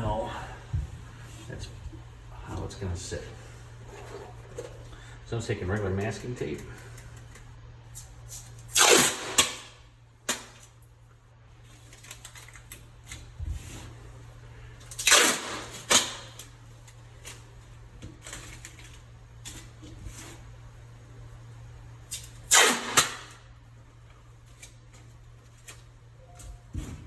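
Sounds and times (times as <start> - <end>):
steady low hum: 0.0 - 27.0
masking tape pulled off roll: 8.0 - 9.7, 14.9 - 16.5, 22.1 - 23.4
tape tearing and crackling: 8.0 - 10.8, 14.9 - 17.4, 22.1 - 23.5.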